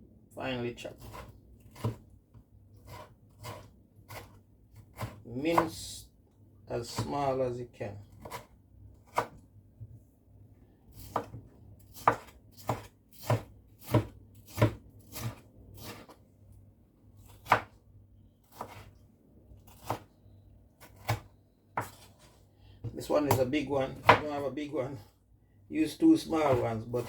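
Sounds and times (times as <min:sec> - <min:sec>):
knife chopping on cutting board: 0:01.0 - 0:02.1, 0:02.8 - 0:05.7, 0:08.1 - 0:09.4, 0:10.9 - 0:16.2, 0:17.2 - 0:17.8, 0:18.5 - 0:19.0, 0:19.7 - 0:20.1, 0:20.8 - 0:24.4, 0:26.4 - 0:27.0.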